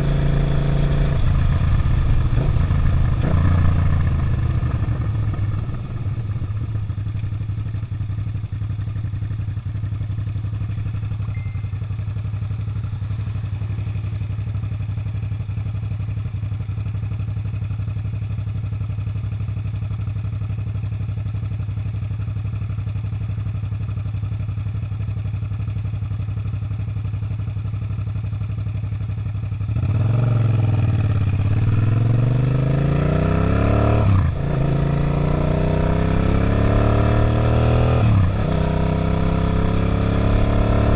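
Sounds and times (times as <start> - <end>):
motorcycle engine idling and revving: 0.0 - 40.9.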